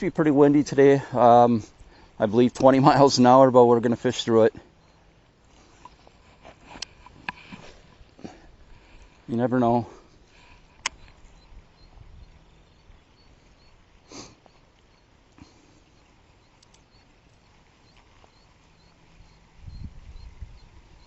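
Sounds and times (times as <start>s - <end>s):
wind buffeting microphone: 10.9s - 13.0s, 19.2s - 21.0s
person sniffing: 14.1s - 14.5s.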